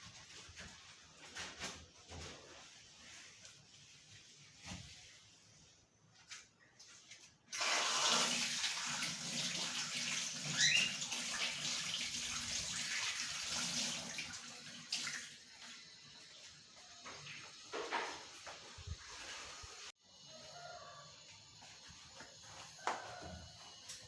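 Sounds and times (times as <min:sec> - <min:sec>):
water running from a tap: 0:07.5 - 0:17.7.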